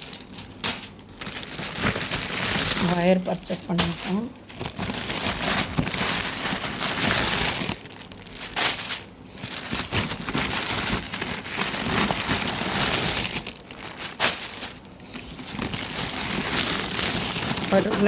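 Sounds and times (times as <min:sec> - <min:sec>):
plastic packaging crinkling: 0:00.0 - 0:18.0.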